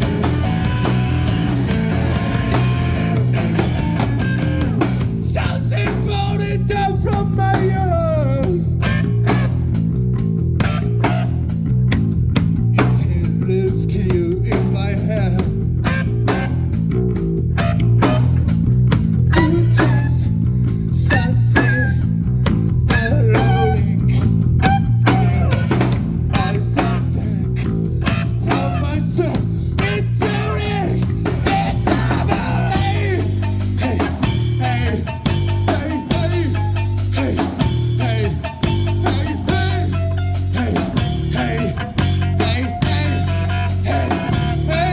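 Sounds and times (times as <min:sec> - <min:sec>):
bass guitar: 0:00.0 - 0:44.9
drums: 0:00.0 - 0:44.9
electric guitar: 0:00.0 - 0:44.9.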